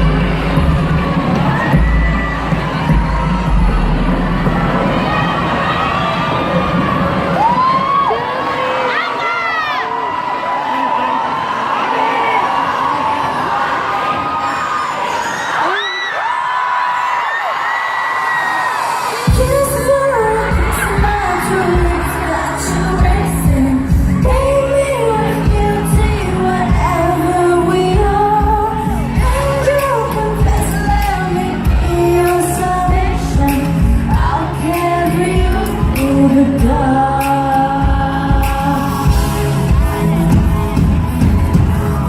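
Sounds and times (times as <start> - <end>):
heavy bass beat: 0.0 - 7.8, 19.3 - 42.0
person singing pop melody: 19.1 - 42.0.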